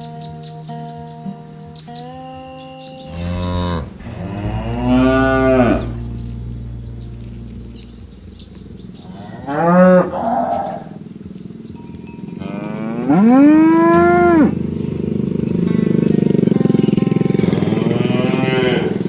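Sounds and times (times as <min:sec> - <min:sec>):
steady hum: 0:03.1 - 0:09.5
cows mooing: 0:03.1 - 0:11.0, 0:11.8 - 0:19.0.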